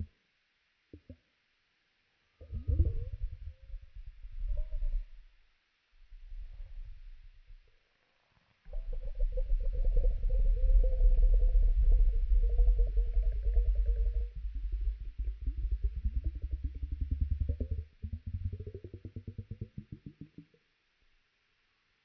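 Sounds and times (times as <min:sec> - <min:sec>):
stomach rumbling slowed down: 0:02.4 - 0:05.4, 0:06.0 - 0:07.8, 0:08.4 - 0:20.7.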